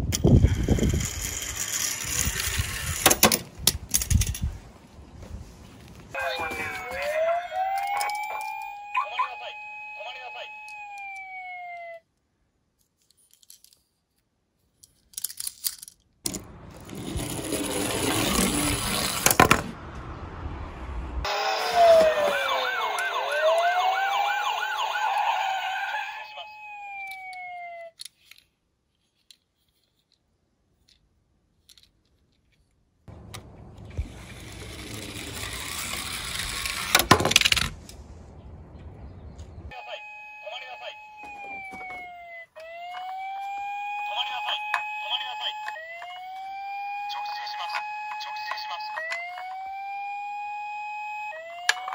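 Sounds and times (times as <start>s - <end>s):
toy cars rolling on plastic track: 0.1s - 4.4s, 15.2s - 19.6s, 33.9s - 37.7s
electronic toy siren wailing: 6.2s - 12.0s, 21.2s - 28.0s, 34.4s - 37.0s, 39.7s - 51.9s.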